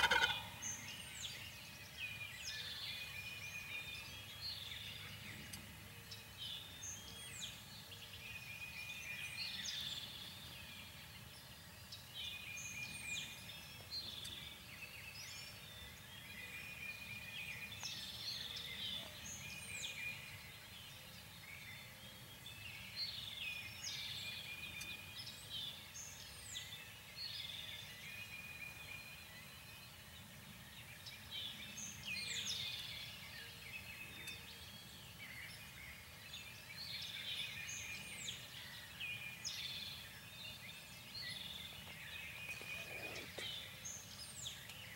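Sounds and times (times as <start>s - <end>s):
wild birds calling: 0.0s - 1.2s, 41.4s - 44.3s
faint background hiss: 0.0s - 44.9s.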